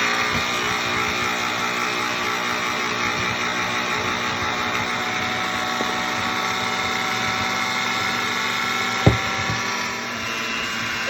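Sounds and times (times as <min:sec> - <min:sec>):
electric hand mixer running: 0:00.0 - 0:09.7
sharp knock: 0:09.1 - 0:09.6.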